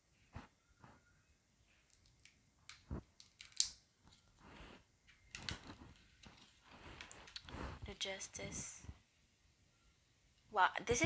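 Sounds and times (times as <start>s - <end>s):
cards clicking and rustling: 5.1s - 7.5s.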